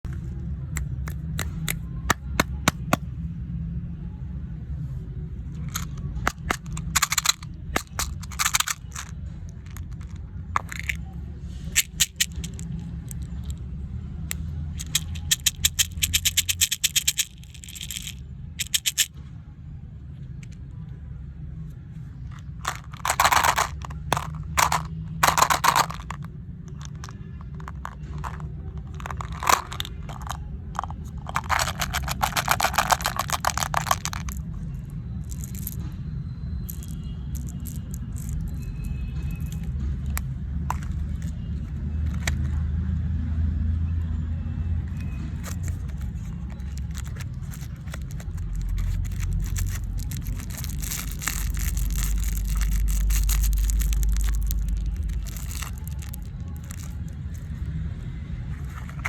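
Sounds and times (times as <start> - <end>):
sharp clicks and taps: 0.8 - 3.0
plastic packaging crinkling: 5.8 - 9.1, 22.6 - 26.2, 27.6 - 34.4, 45.4 - 57.0.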